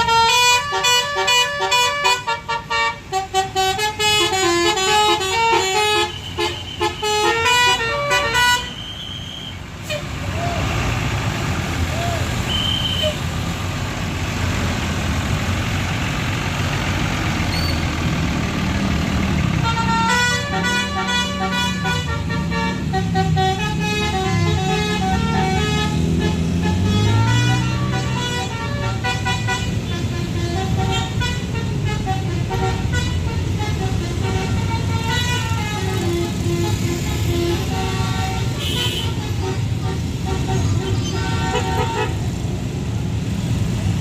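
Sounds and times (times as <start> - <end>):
bus horn playing melody: 0.0 - 9.2, 19.6 - 42.4
vehicle rumble: 0.0 - 44.0.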